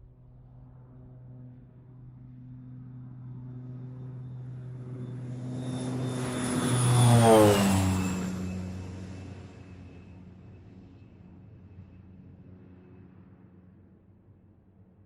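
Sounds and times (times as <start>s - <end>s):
propeller airplane passing by: 0.0s - 10.5s.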